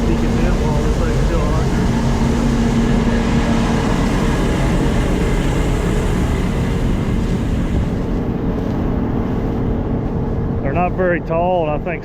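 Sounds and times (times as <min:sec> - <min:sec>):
constant hiss: 0:00.0 - 0:09.6
farm machinery engine running: 0:00.0 - 0:12.0.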